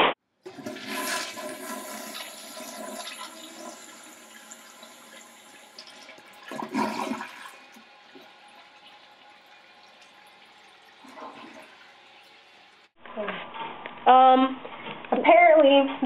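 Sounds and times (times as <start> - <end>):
toilet flushing: 0.3 - 13.0.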